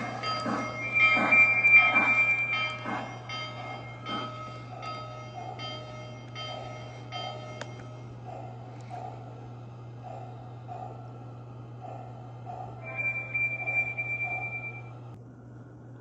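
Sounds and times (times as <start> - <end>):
loud high steady tone: 0.0 - 5.2, 12.8 - 15.1
model train pulses: 0.0 - 8.2, 12.8 - 15.2
low hum: 0.0 - 8.3, 12.8 - 15.2.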